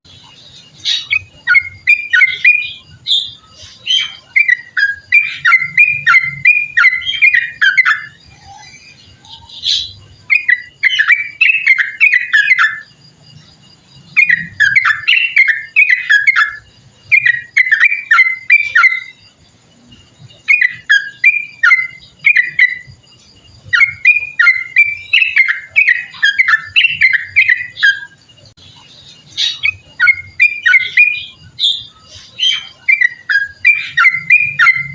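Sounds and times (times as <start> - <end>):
bird singing rapid falling notes: 0.0 - 34.9.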